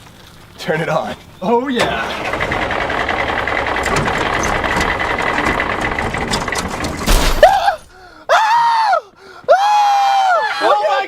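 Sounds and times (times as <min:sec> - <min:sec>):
tractor engine droning: 0:01.8 - 0:08.2
loud crash: 0:03.7 - 0:08.0
man screaming: 0:07.4 - 0:11.0.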